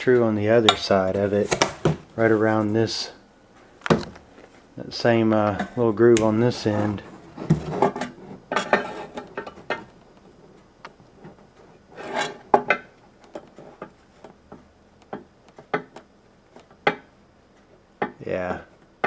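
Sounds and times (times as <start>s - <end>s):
square scraping on table: 6.6s - 9.2s, 11.9s - 12.5s.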